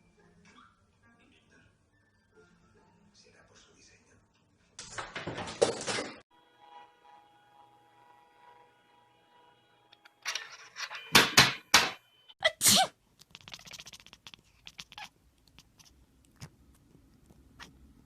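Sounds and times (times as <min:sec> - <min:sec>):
cat sneezing: 0:12.4 - 0:15.9.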